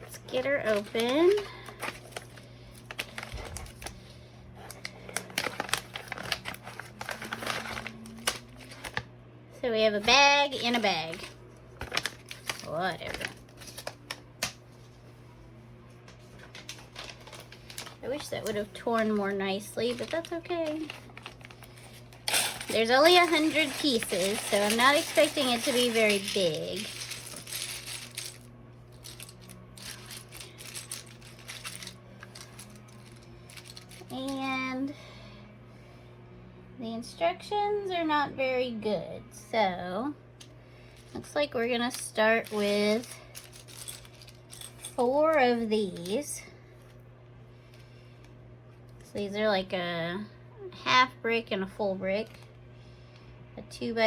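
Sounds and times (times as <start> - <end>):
plastic bag crinkling: 0.1 - 4.0, 4.6 - 9.0, 10.0 - 14.2, 16.3 - 34.4, 41.9 - 45.0
plastic bricks clicking and rattling: 22.3 - 28.4, 29.0 - 34.0.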